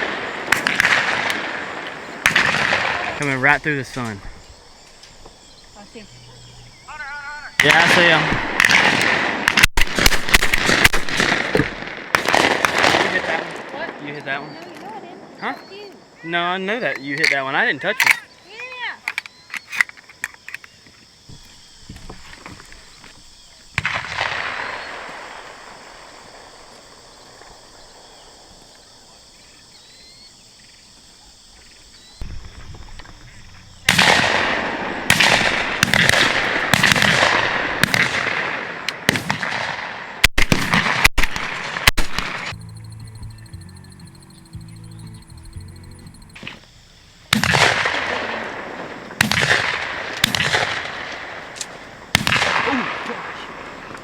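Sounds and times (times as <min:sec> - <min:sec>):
shotguns firing with echo: 0:00.0 - 0:04.2, 0:07.6 - 0:14.0, 0:23.7 - 0:27.5, 0:32.2 - 0:42.5, 0:47.3 - 0:54.0.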